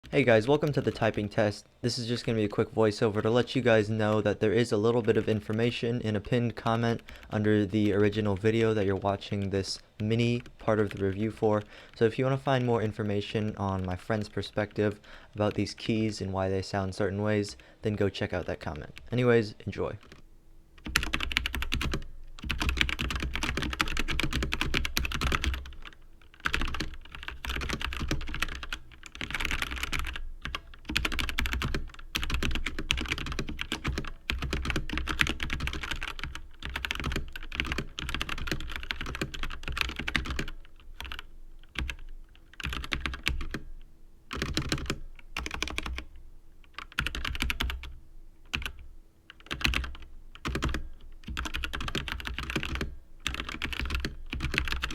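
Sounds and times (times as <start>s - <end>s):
mechanical keyboard typing: 20.8s - 43.7s, 44.3s - 46.0s, 46.7s - 47.9s, 48.5s - 54.9s.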